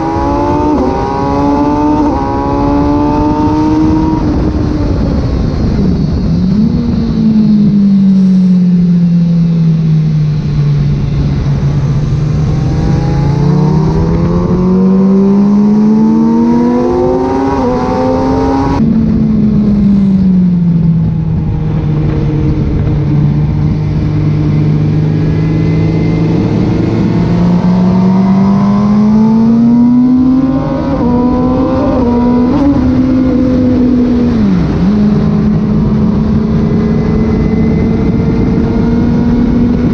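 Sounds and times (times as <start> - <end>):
motorcycle engine revving: 0.0 - 39.9
wind rush: 0.0 - 39.9.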